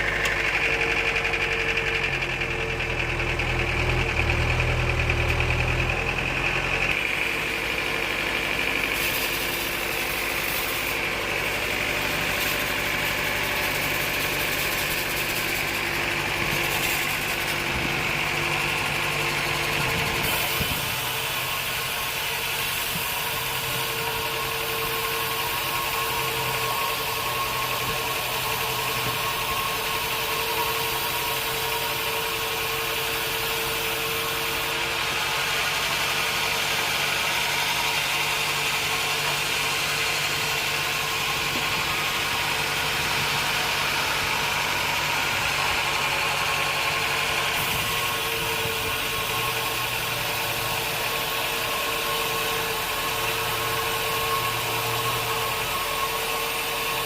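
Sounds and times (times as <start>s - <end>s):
high machine whine: 0.0s - 57.0s
sawmill machinery hum: 0.0s - 57.0s.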